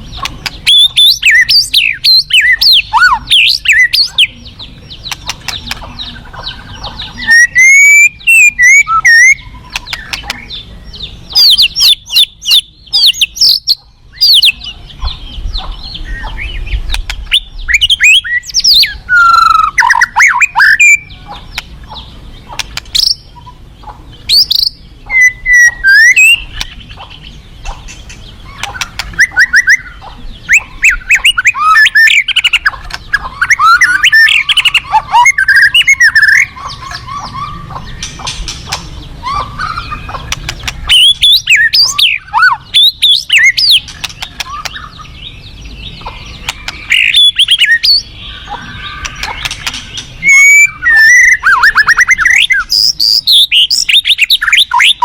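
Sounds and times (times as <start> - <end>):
bird singing whistled sweeps: 7.0 - 10.2, 16.0 - 21.1, 24.4 - 26.7, 28.5 - 38.1, 40.8 - 55.0.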